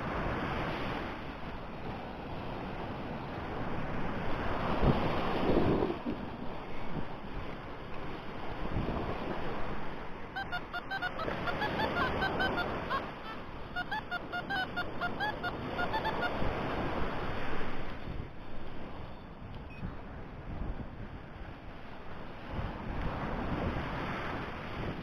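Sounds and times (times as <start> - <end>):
wind buffeting microphone: 0.0 - 10.4, 15.9 - 25.0
short high chirps: 10.4 - 16.4.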